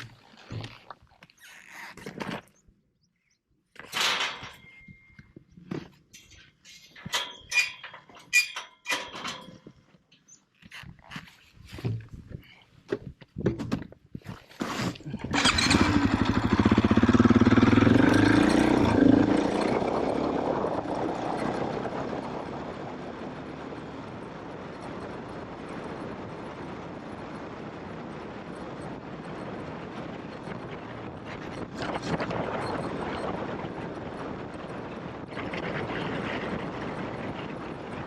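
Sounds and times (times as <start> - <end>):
motorcycle engine accelerating: 15.3 - 26.4.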